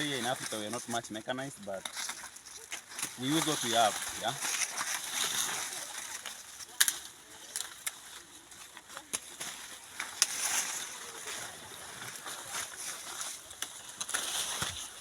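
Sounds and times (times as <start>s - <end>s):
dry maize leaves rustling: 0.0s - 15.0s
stalks snapping: 1.8s - 11.0s, 12.3s - 15.0s.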